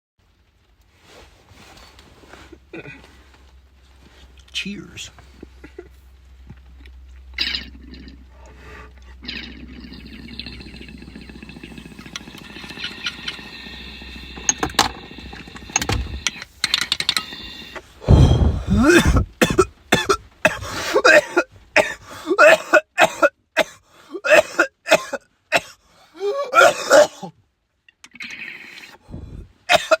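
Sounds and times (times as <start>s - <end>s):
person coughing: 2.7s - 3.0s, 18.0s - 27.3s, 29.7s - 30.0s.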